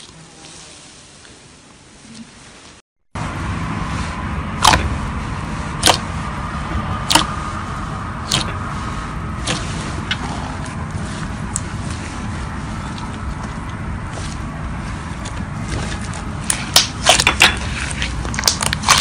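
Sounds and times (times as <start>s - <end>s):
steady low hum: 0.0s - 19.0s
slime popping: 15.7s - 19.0s.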